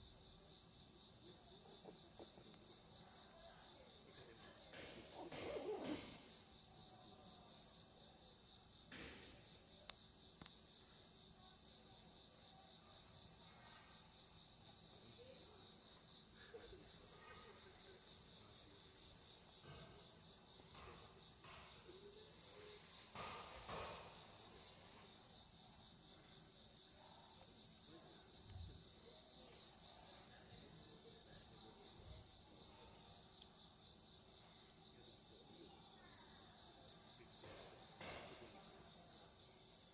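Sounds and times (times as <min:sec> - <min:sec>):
crickets chirring: 0:00.0 - 0:39.9.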